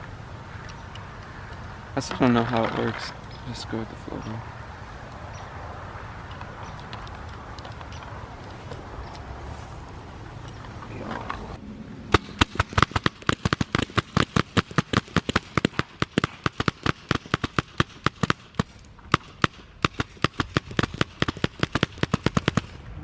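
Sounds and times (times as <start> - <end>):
paintball guns firing: 12.1 - 22.9.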